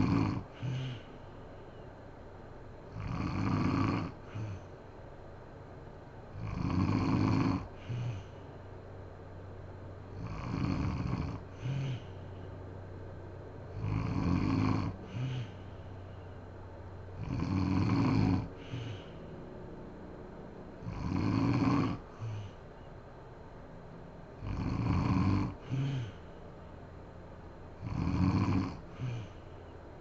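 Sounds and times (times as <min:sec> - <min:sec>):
woman snoring: 0:00.0 - 0:01.1, 0:02.9 - 0:04.7, 0:06.4 - 0:08.4, 0:10.2 - 0:12.2, 0:13.7 - 0:15.9, 0:17.2 - 0:19.2, 0:20.8 - 0:22.6, 0:24.4 - 0:26.3, 0:27.8 - 0:29.5.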